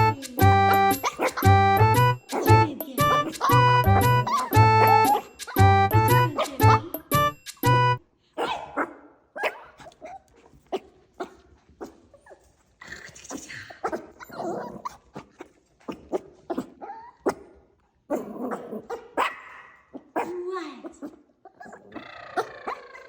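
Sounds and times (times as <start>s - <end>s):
puppies whimpering: 0.0s - 6.8s
puppies yapping: 0.8s - 6.8s.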